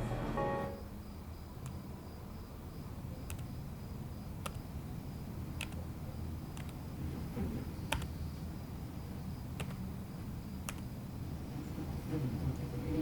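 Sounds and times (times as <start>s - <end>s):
sharp ticks: 3.3s - 3.6s, 4.4s - 4.6s, 6.5s - 6.8s, 7.9s - 8.1s, 9.6s - 9.8s, 10.6s - 10.9s.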